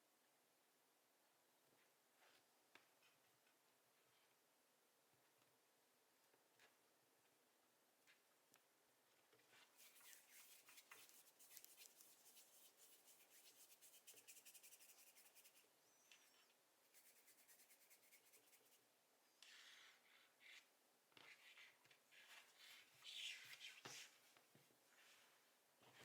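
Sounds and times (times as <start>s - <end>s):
hands rubbing play dough: 9.6s - 18.8s.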